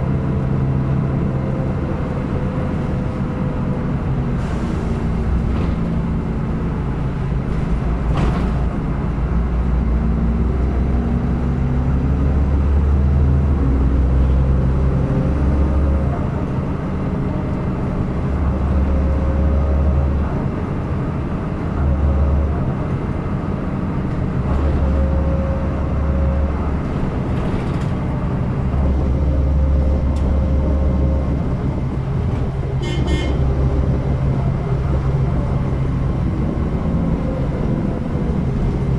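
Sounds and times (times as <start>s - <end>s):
bus engine droning: 0.0s - 38.9s
rattles and clicks: 26.8s - 28.2s.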